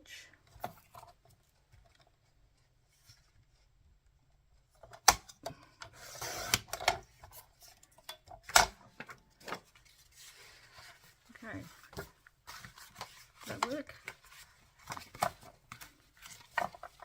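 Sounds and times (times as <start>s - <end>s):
blade rasping through paper: 10.2s - 14.9s.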